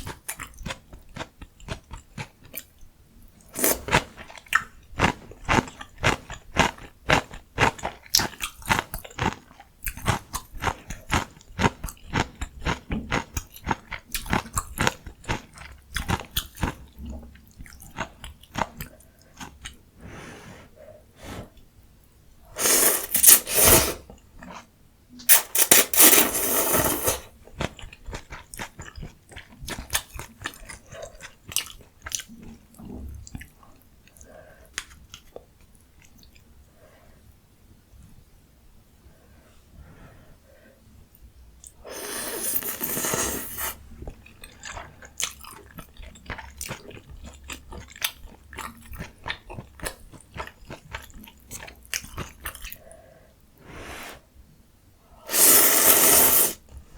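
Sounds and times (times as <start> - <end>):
person chewing crunchy food: 3.4 - 19.8, 22.6 - 24.7, 25.3 - 34.2, 41.8 - 52.9
slurping noodles: 3.6 - 4.1, 22.6 - 24.1, 25.3 - 27.3, 41.8 - 43.9, 53.6 - 54.2, 55.3 - 56.6.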